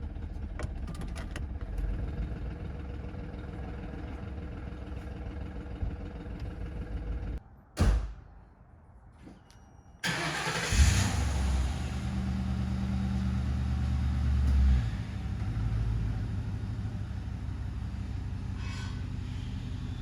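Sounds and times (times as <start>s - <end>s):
car engine idling: 0.0s - 7.4s.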